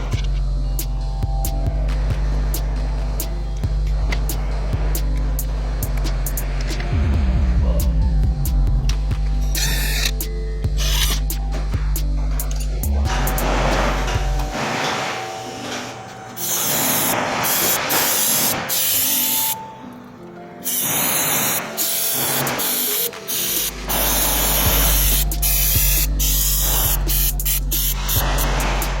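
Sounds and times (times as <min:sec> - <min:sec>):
steady bass line: 0:00.0 - 0:14.6, 0:23.7 - 0:29.0
background music: 0:00.0 - 0:29.0
loud hissing noise: 0:20.7 - 0:29.0.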